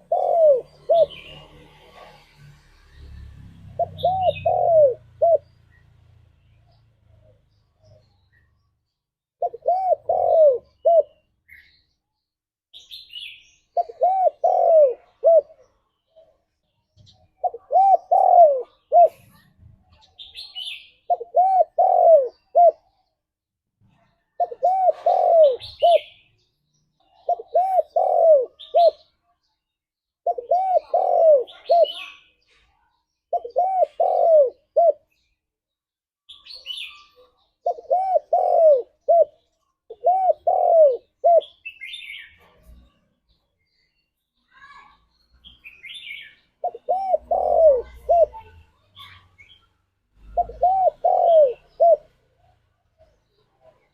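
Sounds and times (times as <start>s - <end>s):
dove cooing: 0.0s - 2.4s, 3.8s - 5.5s, 9.4s - 11.3s, 13.8s - 15.8s, 17.2s - 19.5s, 21.0s - 23.1s, 24.0s - 26.2s, 27.1s - 29.1s, 30.2s - 32.3s, 33.3s - 35.2s, 36.7s - 42.8s, 45.8s - 49.2s, 50.2s - 52.2s
small bird chirping: 0.0s - 23.3s, 23.9s - 35.5s, 36.2s - 53.9s.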